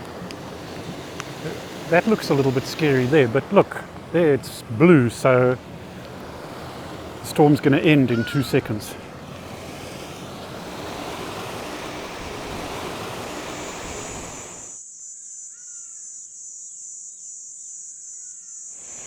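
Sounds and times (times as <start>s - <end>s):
water rushing at a dam: 0.0s - 14.8s
high insect trill: 0.0s - 19.0s.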